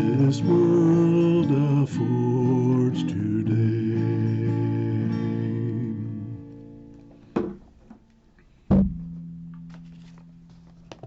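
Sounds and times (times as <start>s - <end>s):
knock: 7.4s - 7.6s, 8.7s - 9.1s
loud thump: 8.7s - 9.3s.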